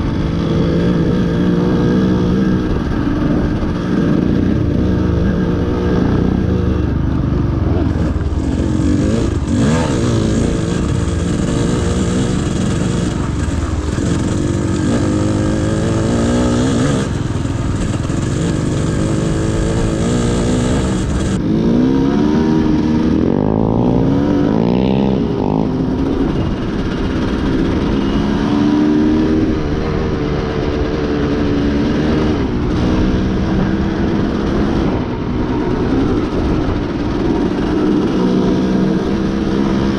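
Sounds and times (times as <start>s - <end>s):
motorcycle engine revving: 0.0s - 39.9s
wind noise: 0.0s - 39.9s.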